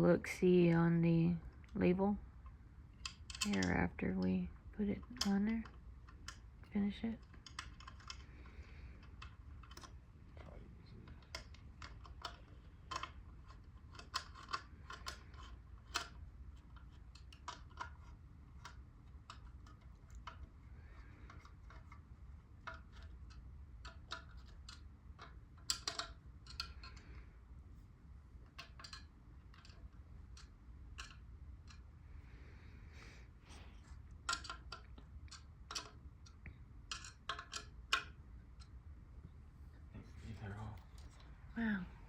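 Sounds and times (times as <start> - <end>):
faint low hum: 0.0 - 42.0
clicks and clinks of small parts: 3.0 - 3.8, 22.6 - 27.0, 34.2 - 38.7.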